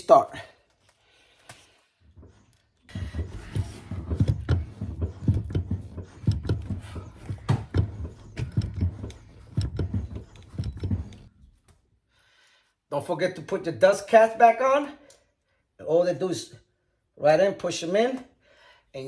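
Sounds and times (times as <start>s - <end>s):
brake pedal knocks and clicks: 2.9s - 11.3s.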